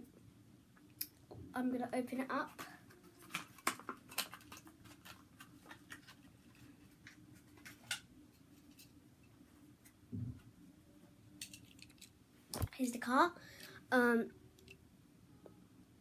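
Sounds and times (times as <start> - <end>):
blister pack clicks and crinkles: 2.6 - 6.2.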